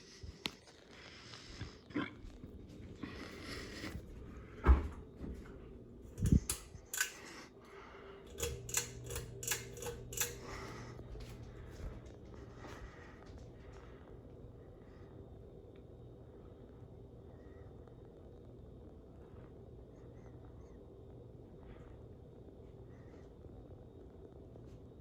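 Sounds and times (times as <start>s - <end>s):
ceiling fan motor humming: 0.0s - 25.0s
sharp clicks and knocks: 6.2s - 7.3s, 8.3s - 10.5s.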